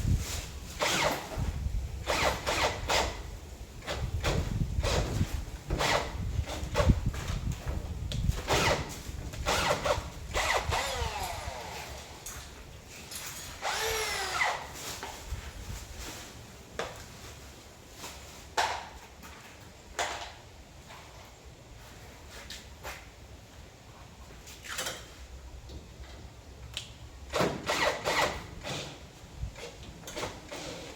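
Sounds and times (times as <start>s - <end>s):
power drill whining: 0.8s - 3.3s, 8.5s - 12.3s, 13.5s - 14.8s.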